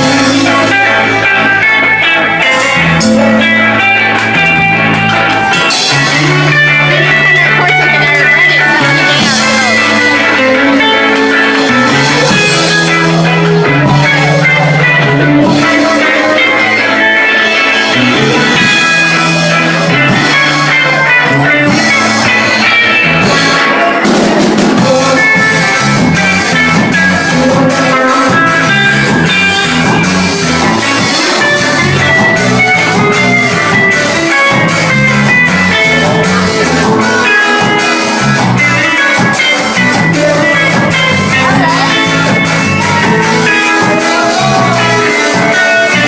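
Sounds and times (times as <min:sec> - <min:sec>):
bass guitar: 0:00.0 - 0:46.0
drum kit beat: 0:00.0 - 0:46.0
electric guitar: 0:00.0 - 0:46.0
ska band playing live: 0:00.0 - 0:46.0.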